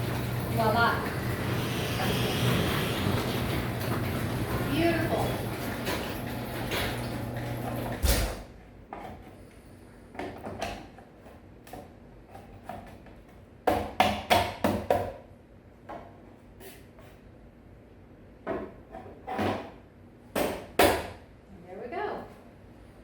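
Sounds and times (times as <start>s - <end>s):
garage door opener humming: 0.0s - 8.6s
garage door heavy thud: 5.3s - 8.5s.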